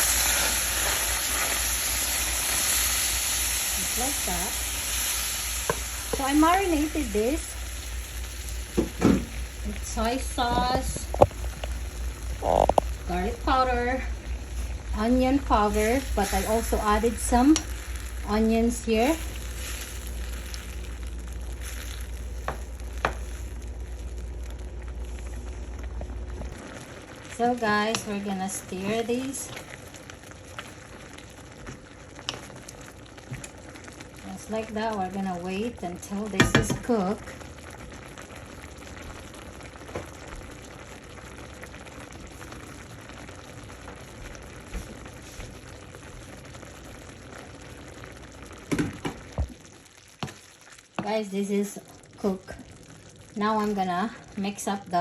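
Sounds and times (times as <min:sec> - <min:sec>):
steady low hum: 0:00.0 - 0:32.3
meat and onions sizzling in a pan: 0:00.0 - 0:55.0.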